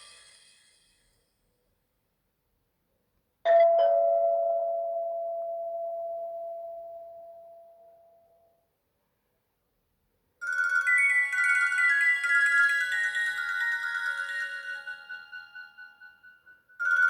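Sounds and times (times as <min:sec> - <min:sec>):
two-note phone ringtone chime: 0:10.4 - 0:17.0.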